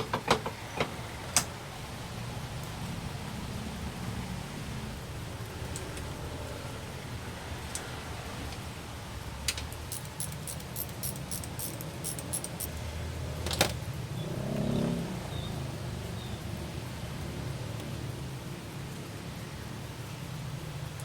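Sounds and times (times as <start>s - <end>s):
sharp click: 9.5s - 12.7s
metallic clinks and jingles: 9.9s - 12.8s.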